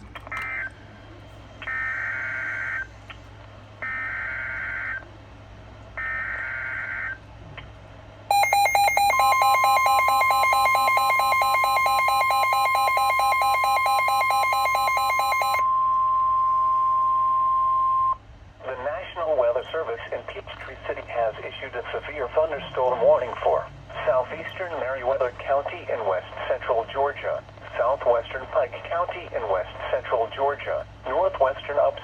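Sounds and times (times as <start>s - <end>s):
harsh cluster of alert tones: 8.3s - 15.6s
steady high tone: 8.3s - 16.6s.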